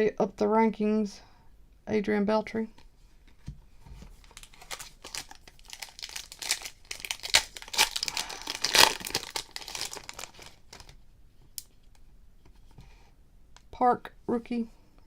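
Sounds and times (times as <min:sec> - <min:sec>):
foil wrapper crinkling: 0:04.2 - 0:11.0.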